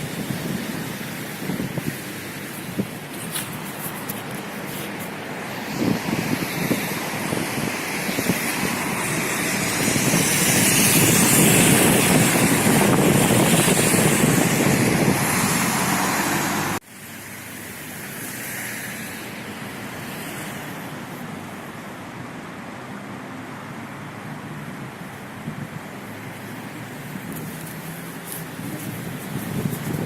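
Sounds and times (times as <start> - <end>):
vehicle noise: 0.0 - 30.0.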